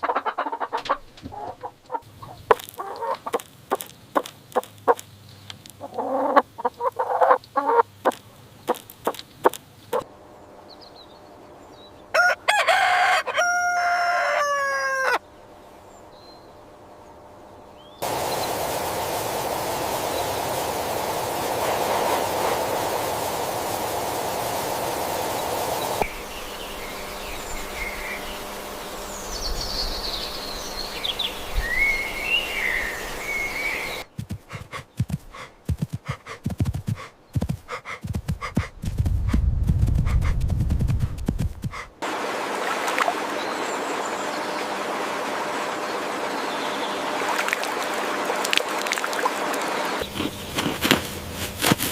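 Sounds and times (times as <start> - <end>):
rooster crowing: 12.1 - 15.2
steady rushing noise: 18.0 - 42.7.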